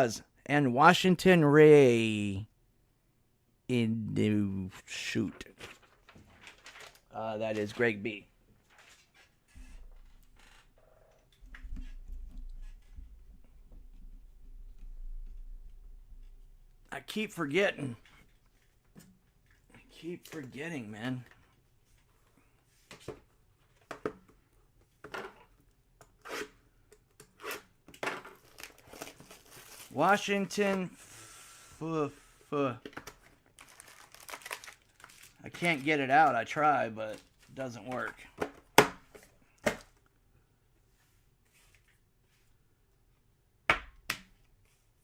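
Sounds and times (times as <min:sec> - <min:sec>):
card wrappers rustling and tearing: 0:28.3 - 0:30.6, 0:33.0 - 0:38.1.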